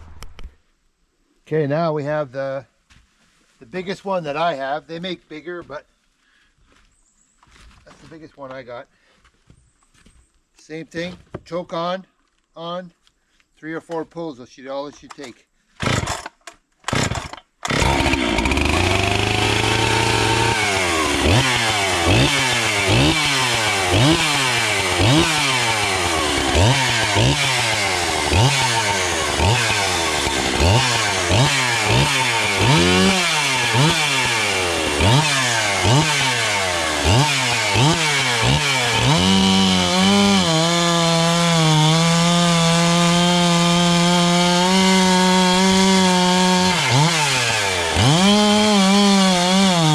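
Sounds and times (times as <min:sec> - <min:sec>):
chainsaw engine revving: 0:15.8 - 0:16.3, 0:16.9 - 0:49.9
chainsaw pull-start: 0:15.8 - 0:49.9.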